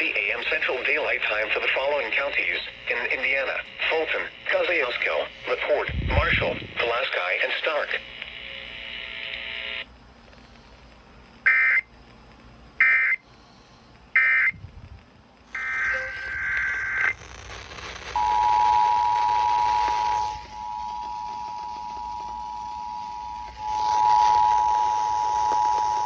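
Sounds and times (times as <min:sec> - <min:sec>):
steady buzz: 0:00.0 - 0:26.0
warbling data bursts: 0:15.5 - 0:26.0
two-tone attention signal: 0:15.6 - 0:17.0, 0:18.2 - 0:26.0.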